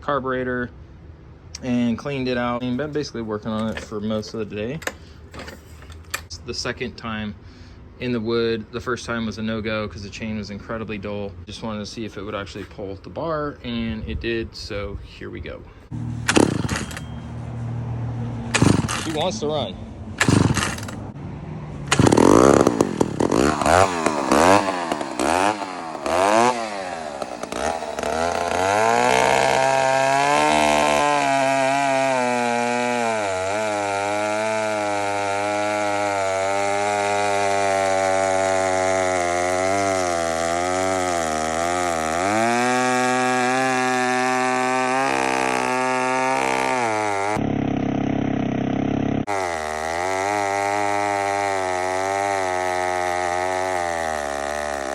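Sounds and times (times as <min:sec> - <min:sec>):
chainsaw revving: 0:03.5 - 0:06.3, 0:15.9 - 0:21.2, 0:21.8 - 0:54.9
chainsaw cutting wood: 0:03.6 - 0:06.3, 0:15.9 - 0:19.6, 0:20.2 - 0:21.2, 0:21.8 - 0:54.9.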